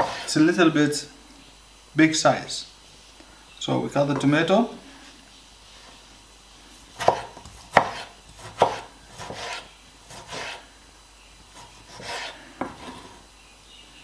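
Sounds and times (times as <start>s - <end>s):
knife slicing tomatoes: 0.0s - 0.3s, 6.9s - 10.6s, 11.5s - 13.2s.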